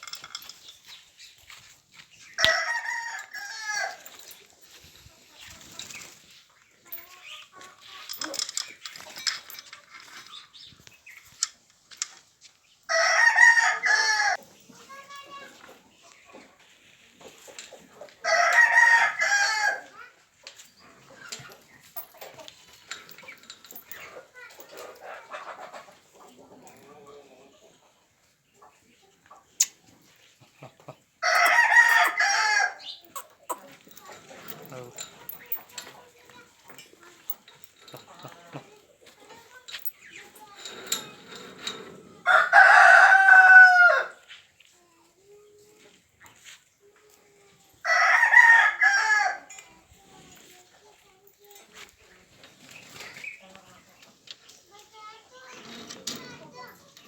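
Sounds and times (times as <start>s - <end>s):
rooster crowing loudly: 2.4s - 4.0s, 12.9s - 14.4s, 18.2s - 19.8s, 31.2s - 32.8s, 42.2s - 44.1s, 47.9s - 49.5s.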